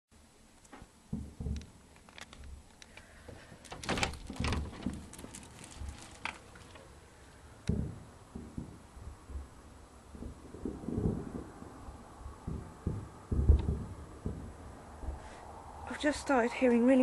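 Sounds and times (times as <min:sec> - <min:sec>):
heavy dull thumps: 0:07.7 - 0:11.6, 0:12.2 - 0:15.3.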